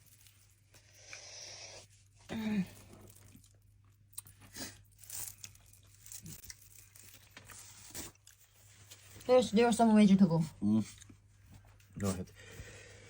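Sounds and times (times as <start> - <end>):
eating crunches: 2.6 - 9.0.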